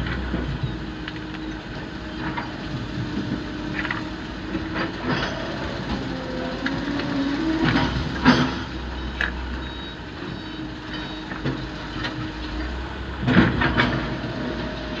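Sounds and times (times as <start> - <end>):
diesel engines running: 0.0 - 15.0
metal clanks and knocks: 7.6 - 8.7, 13.2 - 15.0.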